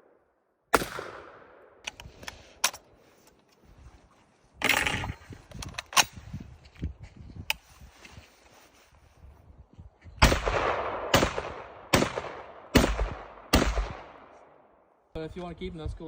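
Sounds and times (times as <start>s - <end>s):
gunshot: 0.8s - 1.6s, 10.2s - 14.1s.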